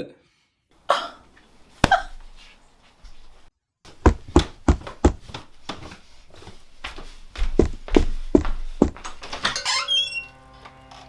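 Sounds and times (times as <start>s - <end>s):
knocking on a door: 4.0s - 5.2s, 7.6s - 9.0s.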